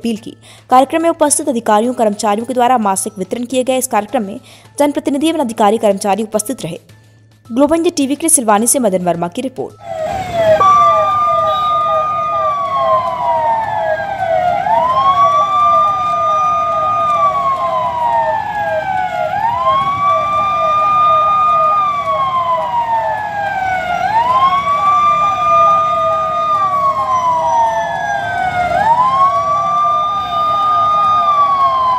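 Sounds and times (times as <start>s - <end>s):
wailing siren: 9.8s - 31.9s
yelping siren: 9.8s - 31.9s.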